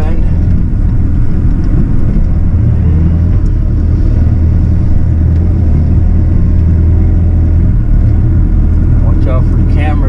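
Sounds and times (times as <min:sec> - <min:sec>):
diesel engine running: 0:00.0 - 0:10.0.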